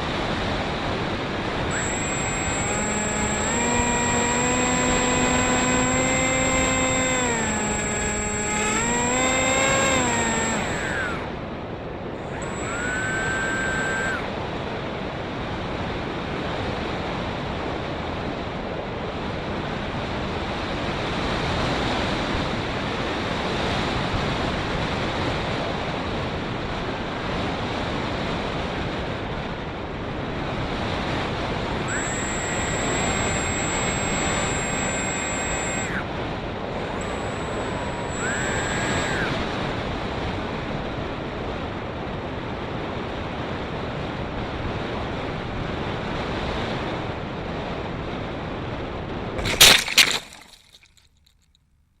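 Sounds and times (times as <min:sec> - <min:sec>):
electric motor and propeller whining: 0:00.0 - 0:15.0, 0:30.4 - 0:40.4, 0:49.4 - 0:50.9.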